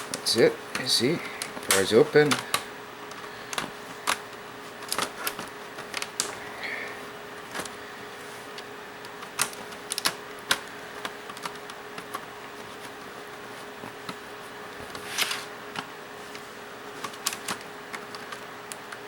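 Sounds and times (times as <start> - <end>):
plastic clips snapping: 0.0 - 6.4, 9.0 - 12.2, 17.0 - 19.0.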